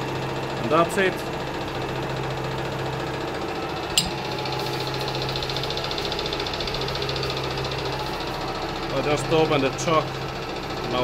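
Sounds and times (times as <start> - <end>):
metal lathe humming: 0.0 - 11.0
sharp metallic click: 4.0 - 4.3.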